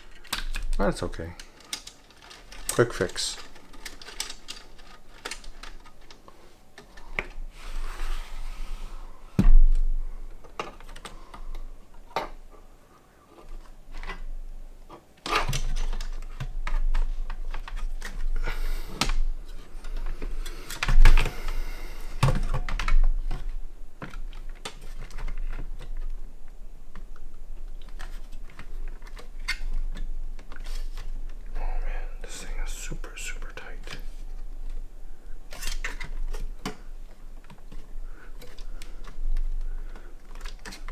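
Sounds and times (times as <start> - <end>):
plastic and metal clicks and knocks: 0.0 - 7.4, 13.4 - 31.6, 35.5 - 40.9.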